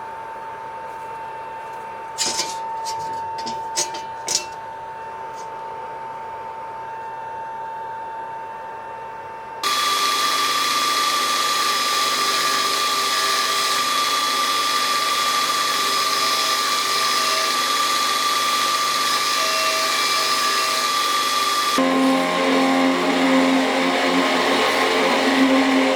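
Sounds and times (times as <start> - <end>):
power grinder whining: 9.6 - 25.9.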